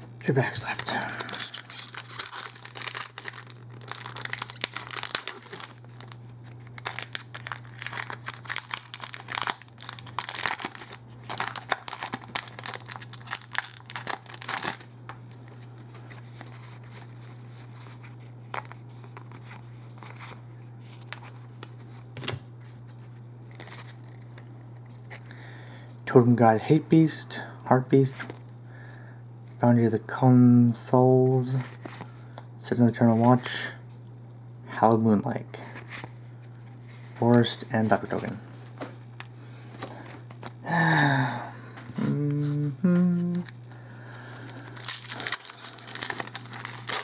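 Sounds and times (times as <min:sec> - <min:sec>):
low electrical hum: 0:00.0 - 0:47.0
wrapper tearing and crinkling: 0:00.3 - 0:17.3, 0:43.4 - 0:47.0.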